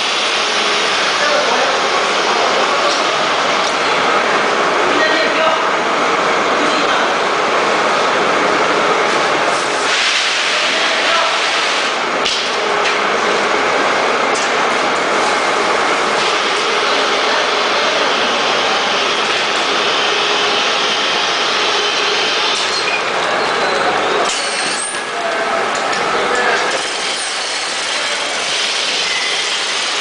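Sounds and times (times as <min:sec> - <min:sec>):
packaging machine running: 0:14.4 - 0:30.0.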